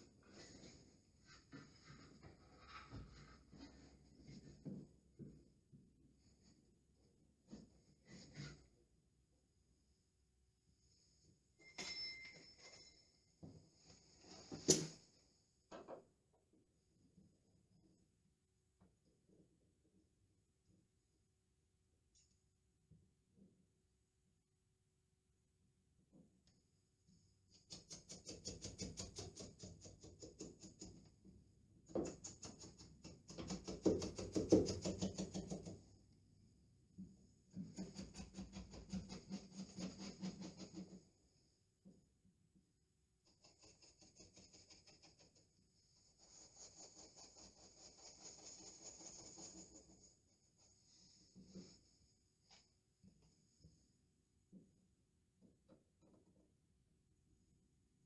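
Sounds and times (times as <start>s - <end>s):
rubbing strokes over wallpaper: 37.6s - 41.5s, 43.2s - 52.2s.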